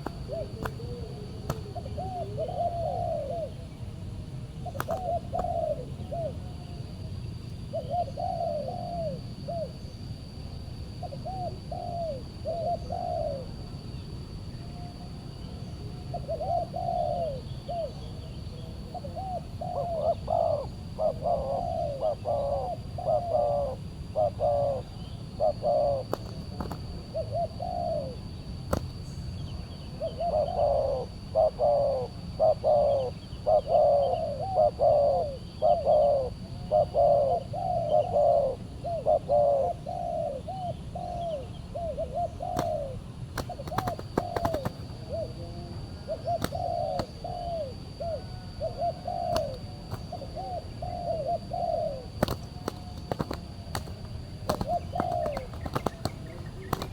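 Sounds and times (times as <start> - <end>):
doves cooing: 0.0 - 7.1, 7.7 - 9.9, 10.9 - 13.8, 14.6 - 56.9.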